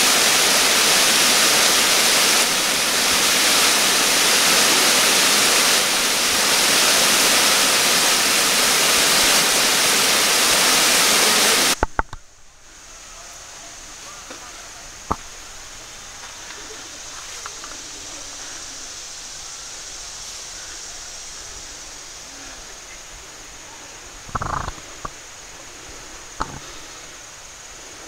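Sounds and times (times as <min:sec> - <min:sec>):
waterfall rushing: 0:00.0 - 0:28.0
sharp clicks: 0:11.8 - 0:12.3.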